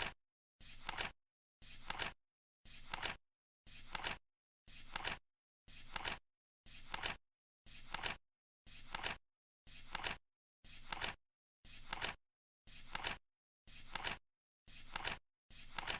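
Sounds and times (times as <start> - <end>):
flip clock cards flipping: 0.8 - 1.1, 1.8 - 2.2, 2.8 - 3.2, 3.8 - 4.2, 4.9 - 5.2, 5.9 - 6.2, 6.9 - 7.2, 7.9 - 8.2, 8.9 - 9.2, 9.9 - 10.2, 10.8 - 11.2, 11.8 - 12.2, 12.9 - 13.2, 13.9 - 14.2, 14.9 - 15.9.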